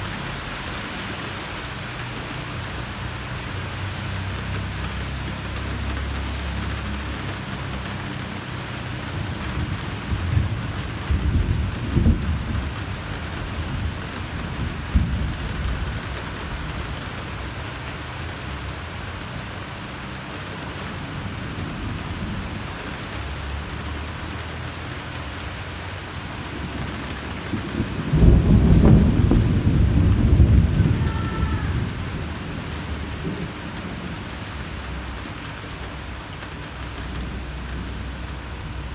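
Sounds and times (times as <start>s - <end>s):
steady rain falling: 0.0s - 38.9s
thunder rumbling: 9.0s - 17.6s, 26.4s - 38.9s.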